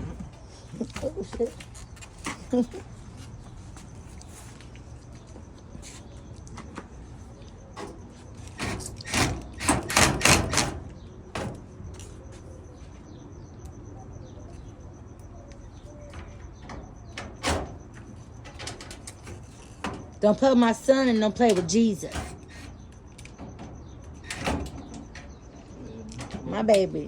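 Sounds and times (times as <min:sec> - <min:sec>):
sharp knocks and clatter: 0:08.6 - 0:10.8.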